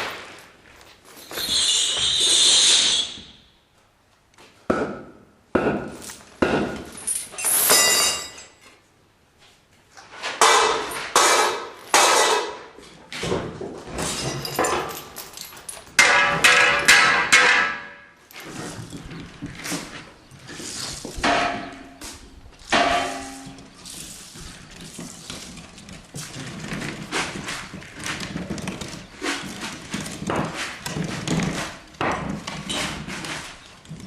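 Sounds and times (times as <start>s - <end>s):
metal clinking: 6.8s - 8.6s, 14.0s - 19.1s
heavy objects knocking and thudding: 25.7s - 34.0s.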